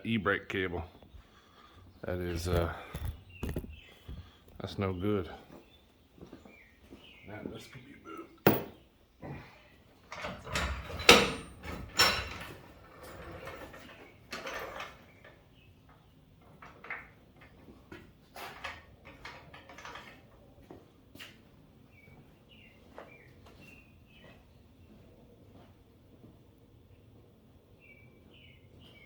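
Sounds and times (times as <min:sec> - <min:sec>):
metal clunks and scrapes: 0:02.2 - 0:04.6.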